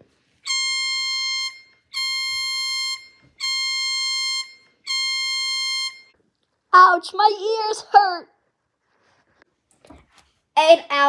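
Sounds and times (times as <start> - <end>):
harsh buzzy alarm beeps: 0.5 - 6.1.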